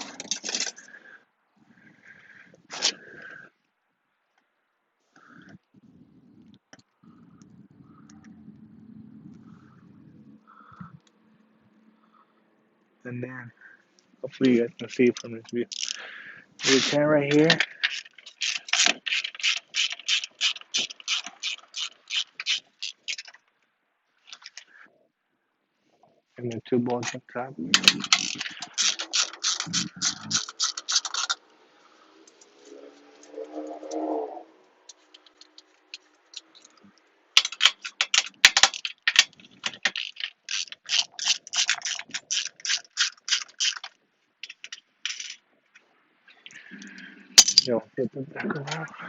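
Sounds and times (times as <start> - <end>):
ratchet wrench clicking: 15.2 - 16.0, 27.8 - 31.4, 37.4 - 45.4.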